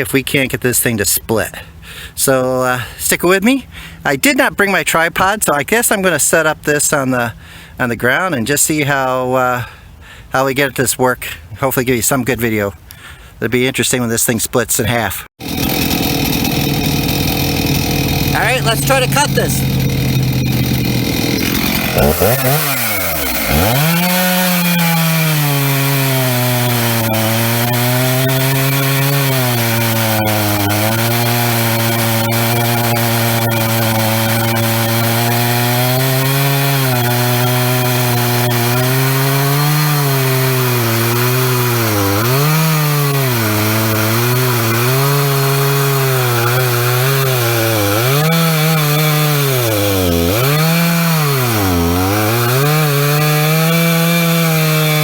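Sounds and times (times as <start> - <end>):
chainsaw cutting into log: 15.4 - 55.0.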